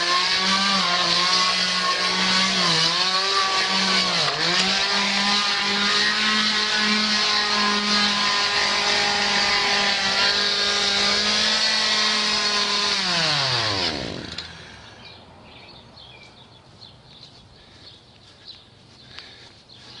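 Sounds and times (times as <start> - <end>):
chainsaw engine running: 0.0 - 15.2.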